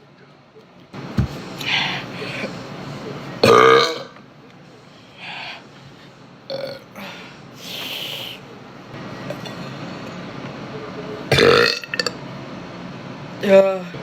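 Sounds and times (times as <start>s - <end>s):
woman burping: 3.4s - 4.1s
breathy hiss: 5.0s - 6.2s, 7.0s - 8.5s.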